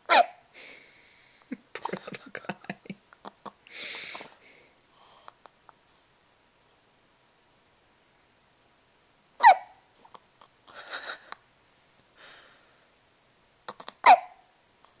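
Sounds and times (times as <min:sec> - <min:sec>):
soft breathing: 0:00.5 - 0:01.5, 0:03.6 - 0:06.9, 0:09.9 - 0:13.0
person hiccuping: 0:13.7 - 0:14.3.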